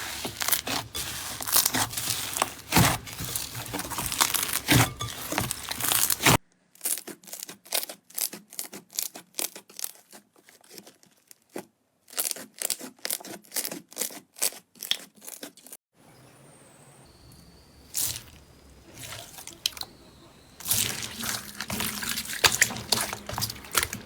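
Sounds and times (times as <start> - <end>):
slime crackling: 0.0 - 11.3, 20.6 - 24.0.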